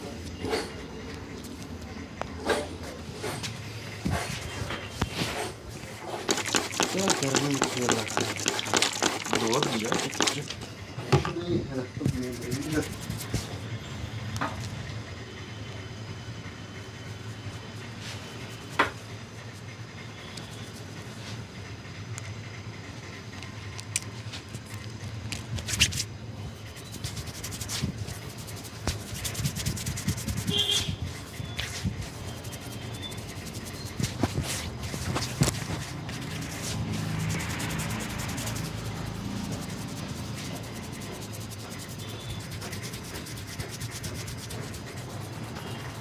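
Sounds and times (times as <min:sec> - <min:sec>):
hands rubbing head and skin: 0:04.1 - 0:10.7, 0:12.0 - 0:13.6, 0:24.3 - 0:46.0
steady low hum: 0:26.0 - 0:46.0.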